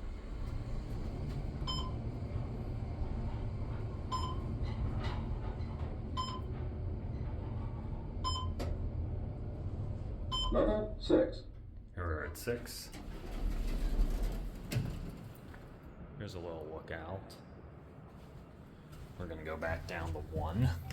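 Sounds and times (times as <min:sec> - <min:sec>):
elevator low rumble: 0:00.0 - 0:20.9.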